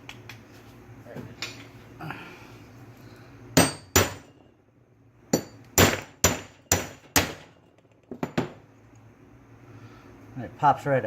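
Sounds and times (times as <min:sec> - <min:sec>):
hammer striking metal: 0:03.6 - 0:04.3, 0:05.3 - 0:07.5.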